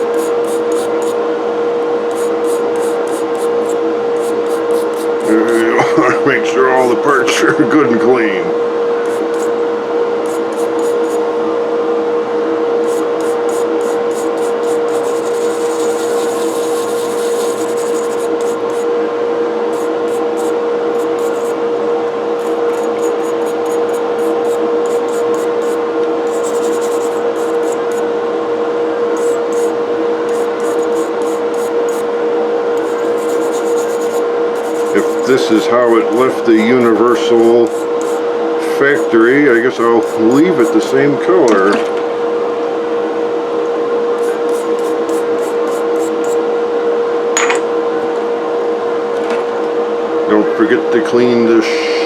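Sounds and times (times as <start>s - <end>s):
powered wire brush whining: 0.0s - 1.2s, 1.9s - 6.1s, 8.9s - 11.5s, 12.8s - 19.0s, 19.6s - 28.2s, 29.1s - 32.1s, 32.8s - 41.1s, 44.2s - 46.4s
bristles scraping metal: 9.0s - 9.6s, 10.2s - 11.2s.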